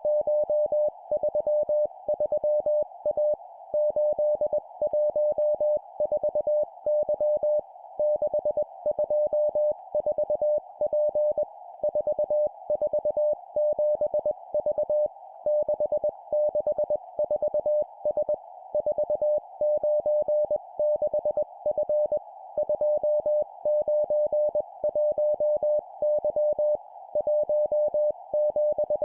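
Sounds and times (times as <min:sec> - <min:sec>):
morse code beeps: 0:18.8 - 0:29.0.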